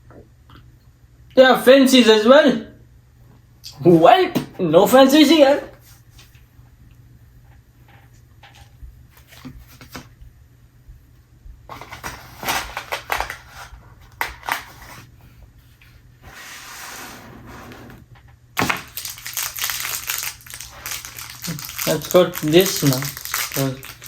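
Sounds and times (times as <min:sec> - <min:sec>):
plastic packaging crinkling: 0:11.7 - 0:15.1, 0:18.6 - 0:24.0.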